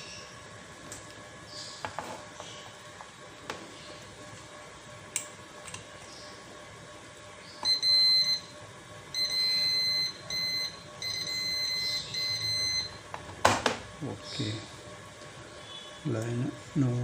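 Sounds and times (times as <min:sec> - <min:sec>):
multimeter continuity beeps: 0:07.6 - 0:13.1.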